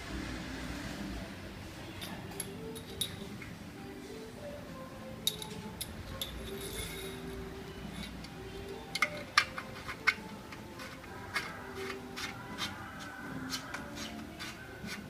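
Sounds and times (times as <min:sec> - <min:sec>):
faint background music: 0:00.0 - 0:15.0
metallic clinks of faucet parts: 0:02.0 - 0:03.2, 0:05.2 - 0:07.2.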